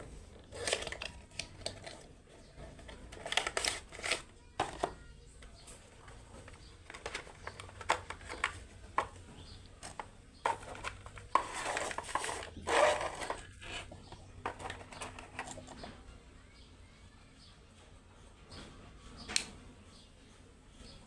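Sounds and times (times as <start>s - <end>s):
packing material rustling: 0.4s - 2.0s, 3.0s - 4.3s, 9.8s - 15.6s.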